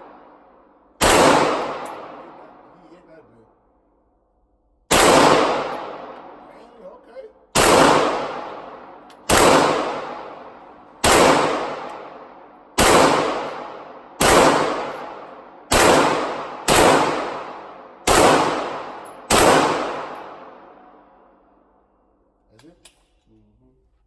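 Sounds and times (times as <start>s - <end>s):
gunshots echoing: 1.0s - 2.8s, 4.9s - 21.1s.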